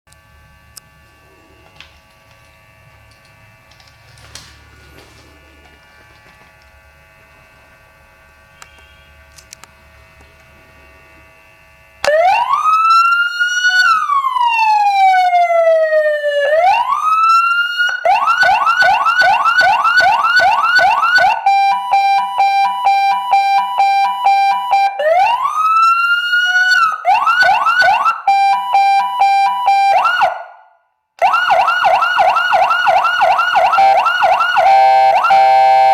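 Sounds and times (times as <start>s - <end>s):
electronic police siren: 12.0s - 35.9s.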